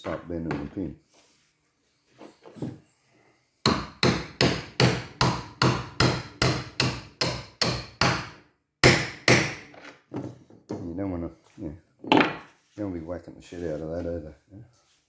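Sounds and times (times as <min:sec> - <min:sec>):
hammer striking metal punch: 0:03.7 - 0:09.7.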